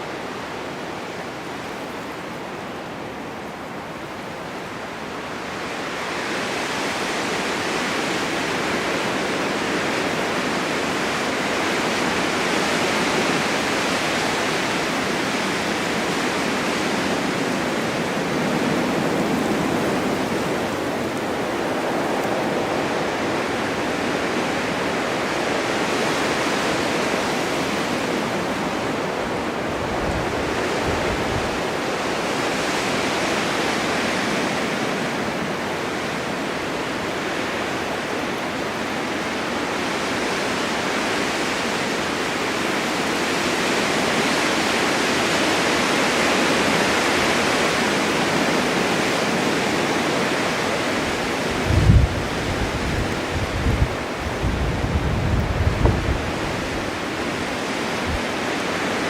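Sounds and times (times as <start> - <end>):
blizzard wind rushing: 0.1 - 59.0.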